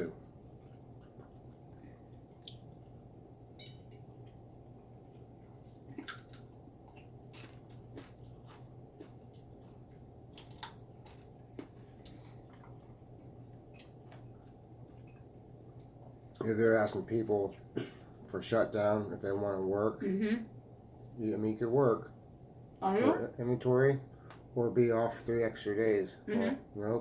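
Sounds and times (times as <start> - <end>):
people chewing: 0.0 - 3.1, 3.8 - 18.3
steady low hum: 0.0 - 27.0.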